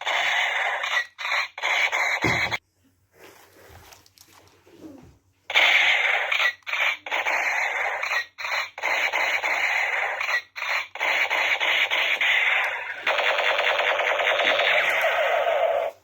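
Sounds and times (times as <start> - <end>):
toy gun electronic firing: 0.0 - 2.6, 5.5 - 15.9.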